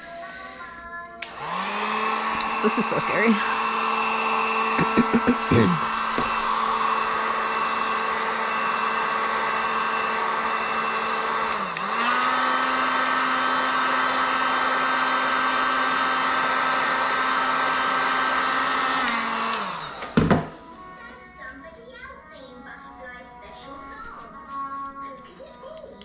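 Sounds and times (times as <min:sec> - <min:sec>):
hot-air blower running: 0:01.2 - 0:21.1.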